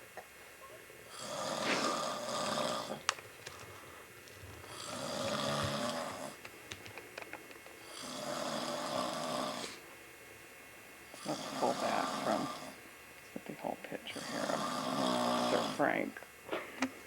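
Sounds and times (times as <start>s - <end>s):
man snoring: 1.1s - 3.0s, 4.6s - 6.4s, 7.8s - 9.8s, 11.1s - 12.8s, 14.1s - 16.0s.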